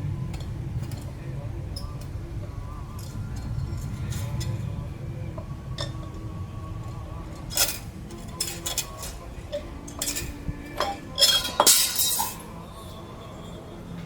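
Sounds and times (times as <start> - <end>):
metal parts and tools clinking: 7.4 - 12.5.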